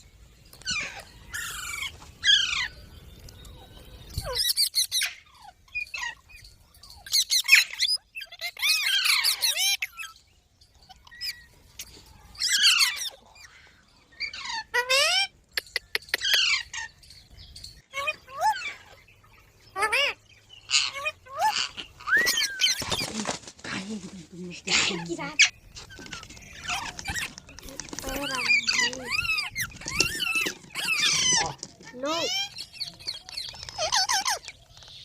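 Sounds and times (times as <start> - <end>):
parrot screeching and squawking: 0.6 - 2.7, 4.2 - 6.2, 7.0 - 10.2, 12.4 - 13.5, 14.2 - 15.3, 17.9 - 19.0, 19.7 - 23.0, 24.7 - 27.4, 28.0 - 32.6, 33.5 - 34.5.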